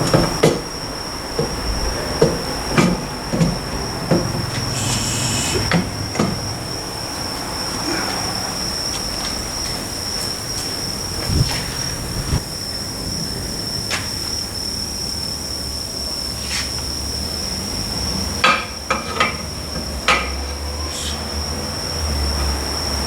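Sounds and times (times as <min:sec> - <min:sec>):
high-pitched whine: 0:10.8 - 0:13.1.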